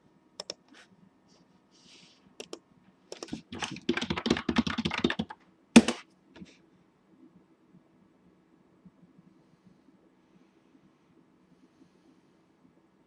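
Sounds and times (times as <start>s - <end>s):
keyboard typing clicks: 0.4s - 0.7s, 2.4s - 6.0s.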